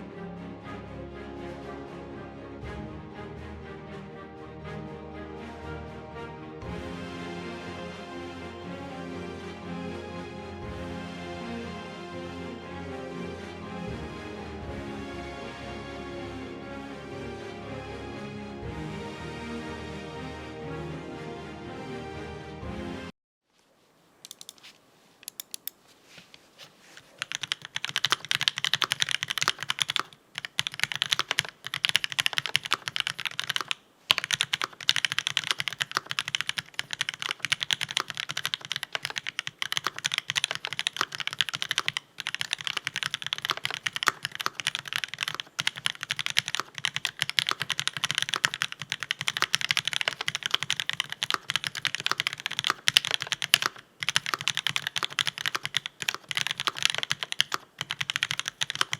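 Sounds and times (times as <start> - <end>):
mechanical keyboard typing: 24.3 - 24.6, 25.3 - 25.8, 27.0 - 58.9.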